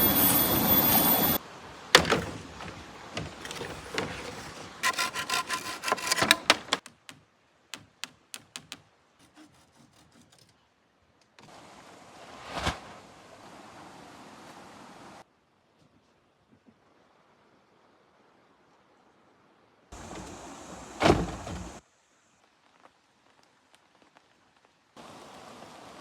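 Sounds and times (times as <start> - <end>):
saw scraping wood: 2.2 - 6.9, 9.2 - 10.6
steady hiss: 20.0 - 26.0.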